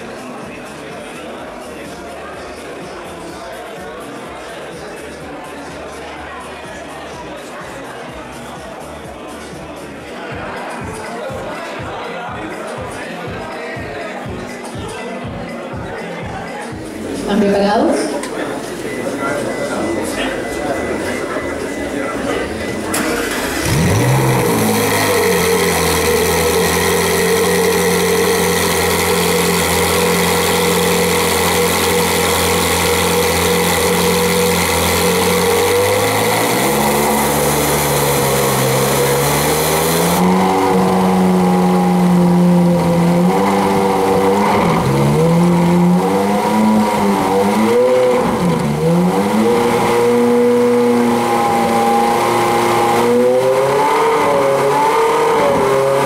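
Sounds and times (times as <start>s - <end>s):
car engine idling and revving: 16.8s - 56.0s.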